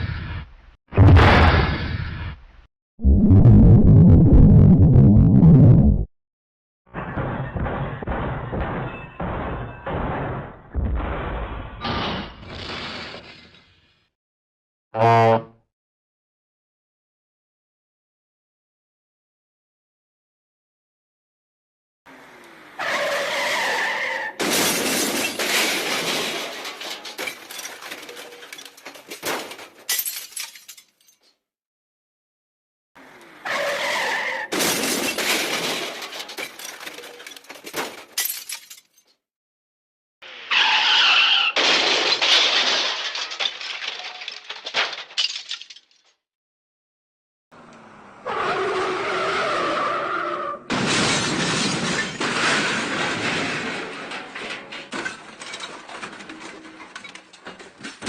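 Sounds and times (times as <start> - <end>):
glass shattering crash: 24.4 - 31.2, 34.5 - 39.0, 41.5 - 46.1, 50.7 - 57.8
tinkling and clattering pieces: 24.8 - 29.2, 29.9 - 31.3, 34.8 - 39.1, 41.6 - 46.1
screech: 40.3 - 41.6.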